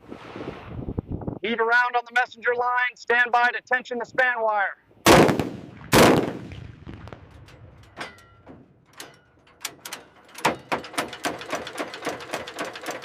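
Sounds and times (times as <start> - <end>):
loud sharp bangs: 5.0 - 8.1.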